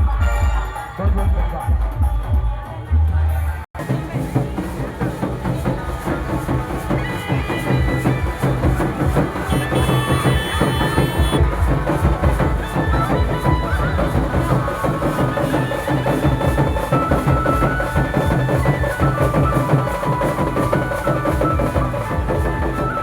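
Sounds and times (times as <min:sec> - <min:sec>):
drums fast steady beat: 0:00.0 - 0:03.2, 0:03.8 - 0:23.0
wind instrument melody: 0:03.8 - 0:23.0.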